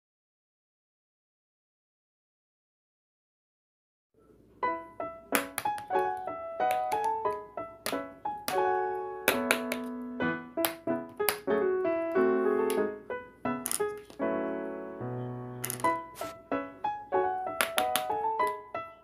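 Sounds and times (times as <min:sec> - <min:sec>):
keyboard melody: 0:04.6 - 0:19.0.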